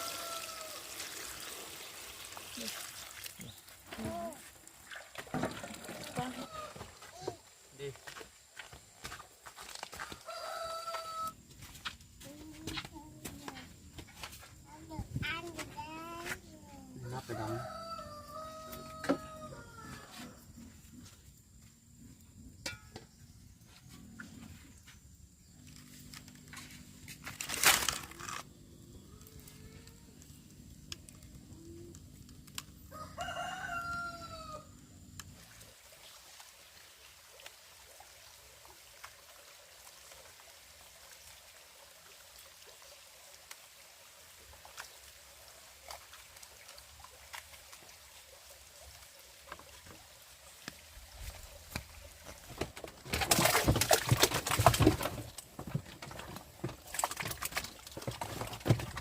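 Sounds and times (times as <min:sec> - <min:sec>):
rooster crowing: 0:00.0 - 0:01.0, 0:10.0 - 0:11.4, 0:17.2 - 0:20.4, 0:32.9 - 0:34.8.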